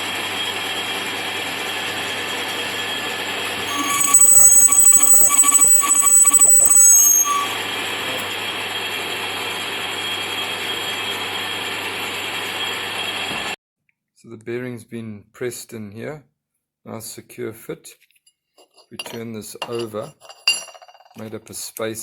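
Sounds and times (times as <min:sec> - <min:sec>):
metal lathe running: 0:01.9 - 0:08.6
boring tool squealing on metal: 0:03.7 - 0:08.3.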